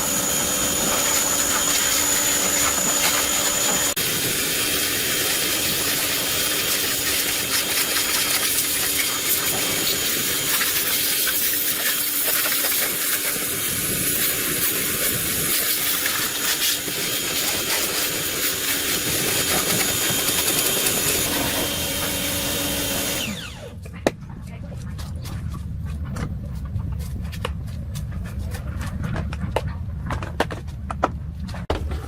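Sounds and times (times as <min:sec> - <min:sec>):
loud steady hiss: 0:00.8 - 0:23.1.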